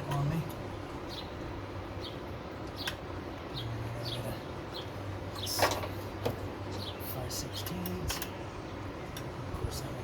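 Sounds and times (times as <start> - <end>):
bird chirping: 0.0 - 8.8.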